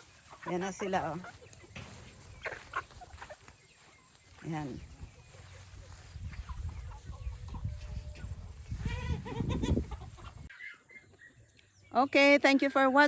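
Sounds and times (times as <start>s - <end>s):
chickens clucking: 0.0s - 11.8s.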